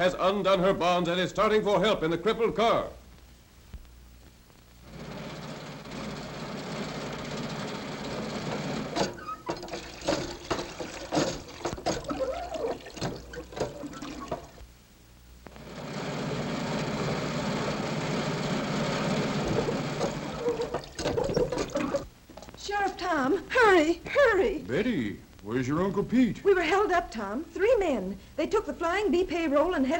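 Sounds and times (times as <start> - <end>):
knocks and rattling clatter: 8.5 - 14.6, 19.5 - 23.0.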